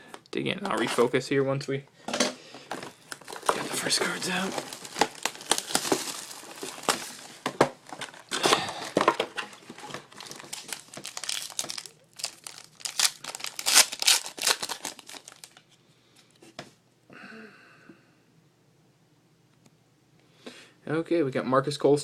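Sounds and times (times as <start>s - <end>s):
packaging being torn and crinkled: 3.1s - 15.6s.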